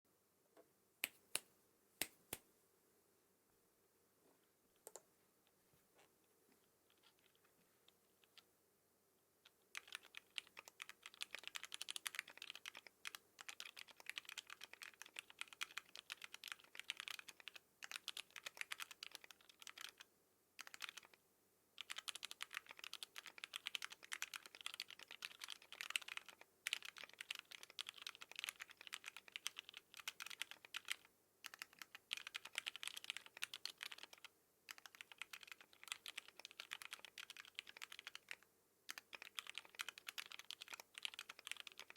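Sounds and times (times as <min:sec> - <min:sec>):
fast mechanical keyboard typing: 0:09.7 - 0:20.0, 0:20.6 - 0:21.2, 0:21.8 - 0:41.9.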